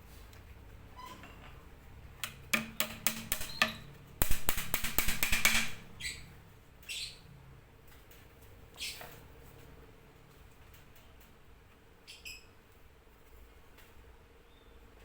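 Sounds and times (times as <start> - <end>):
rattling clicks: 2.2 - 5.8
cage parts clicking: 2.2 - 5.9.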